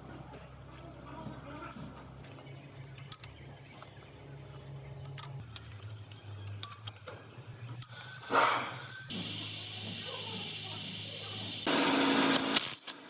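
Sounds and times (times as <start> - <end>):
light metallic clicks: 2.9 - 8.2.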